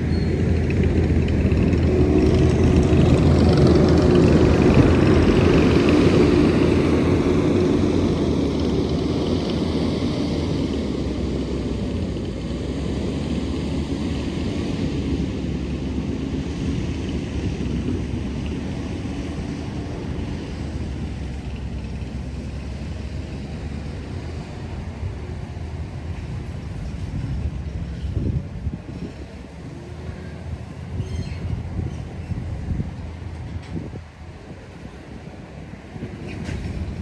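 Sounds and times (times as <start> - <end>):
skid steer engine running: 0.0 - 37.0.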